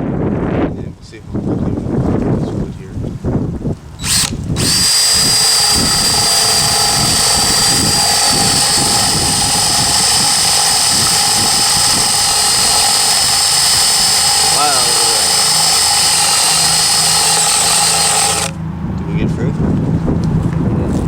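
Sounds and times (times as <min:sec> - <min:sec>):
cordless drill boring into wood: 0:04.0 - 0:18.6.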